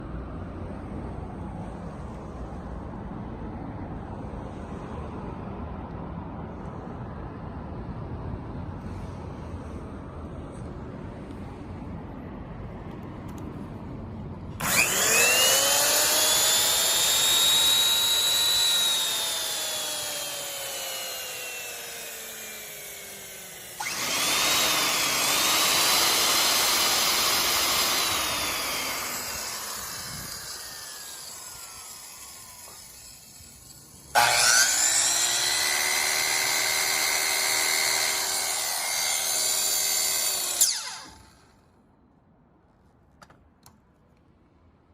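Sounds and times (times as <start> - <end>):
power tool motor whine: 14.6 - 41.6.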